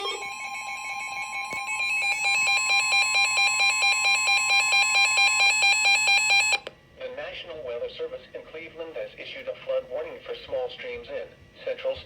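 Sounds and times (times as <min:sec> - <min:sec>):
two-tone alarm: 0:00.0 - 0:06.7.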